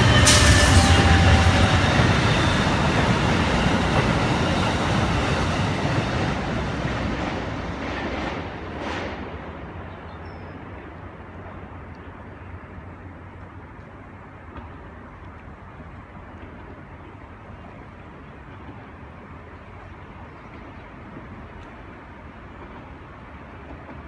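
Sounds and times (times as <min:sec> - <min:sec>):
train wheels rumbling on rails: 0:00.0 - 0:10.1.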